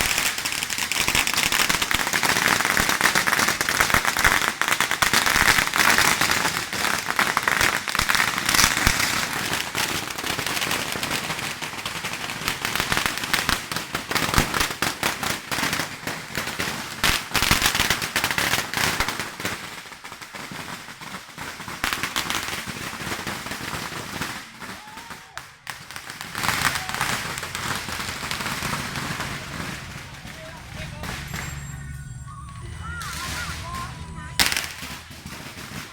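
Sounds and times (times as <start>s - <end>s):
firecrackers crackling: 0.0s - 35.9s.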